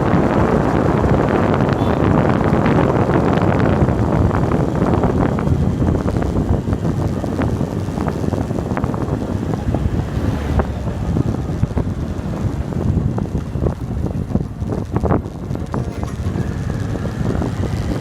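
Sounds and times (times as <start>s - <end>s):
road rumble: 0.0s - 18.0s
wind buffeting microphone: 0.0s - 18.0s
small clicks and rattles: 13.6s - 18.0s.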